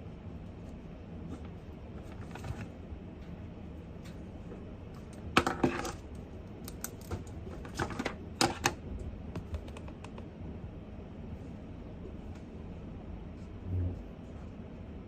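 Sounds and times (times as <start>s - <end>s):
low room noise: 0.0s - 15.0s
typing on computer keyboard: 9.4s - 10.3s.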